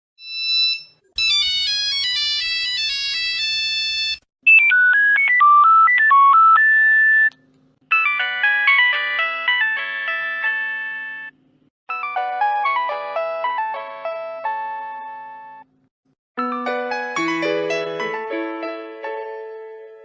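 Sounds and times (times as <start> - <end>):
mobile phone ringtones: 0.2 - 7.3, 7.9 - 12.9.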